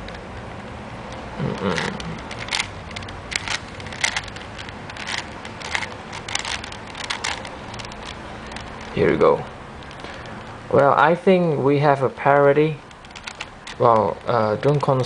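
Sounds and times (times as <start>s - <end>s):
puzzle cube layers clicking: 1.1s - 9.2s.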